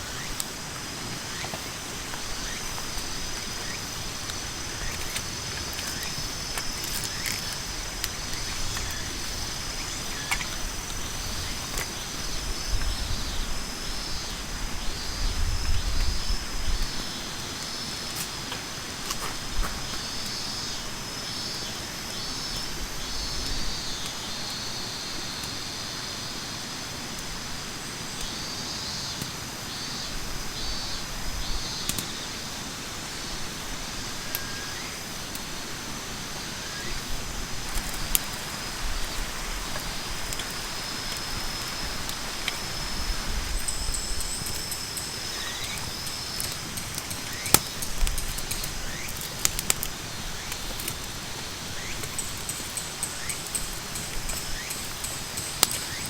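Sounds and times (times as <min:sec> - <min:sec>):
campfire crackling: 0:00.0 - 0:20.6, 0:33.6 - 0:56.0.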